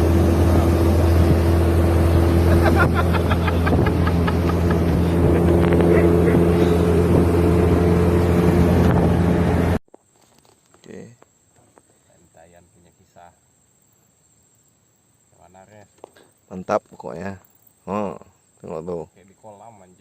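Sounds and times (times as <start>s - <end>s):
boat motor running: 0.0s - 9.8s.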